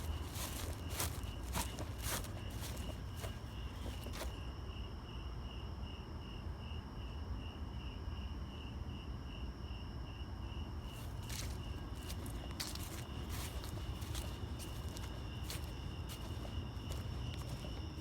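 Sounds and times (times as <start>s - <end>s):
footstep: 0.0s - 4.4s, 10.9s - 18.0s
insect chirping: 0.0s - 18.0s.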